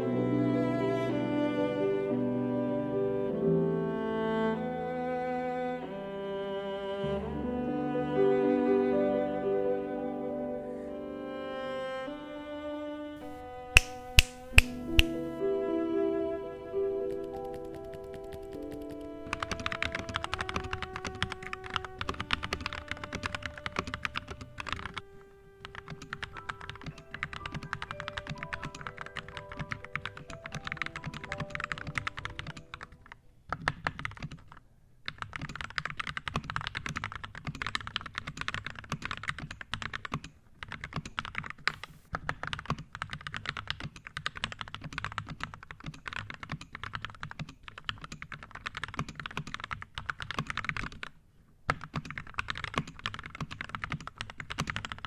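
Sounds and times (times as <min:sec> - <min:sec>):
music with held notes: 0:00.0 - 0:33.0
mechanical keyboard typing: 0:17.1 - 0:55.0.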